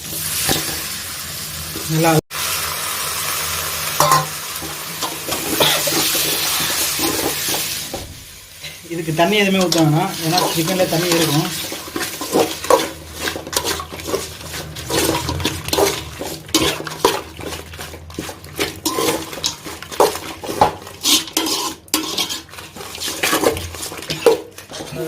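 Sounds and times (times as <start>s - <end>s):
metal spoon scraping a pan: 4.0s - 7.8s, 9.5s - 25.0s.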